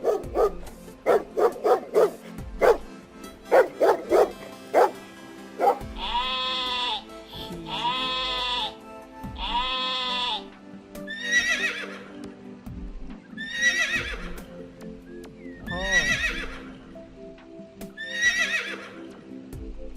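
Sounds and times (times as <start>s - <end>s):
background music: 0.0s - 19.9s
horse whinnying: 11.1s - 12.2s, 13.4s - 14.5s, 15.7s - 16.8s, 18.0s - 19.1s.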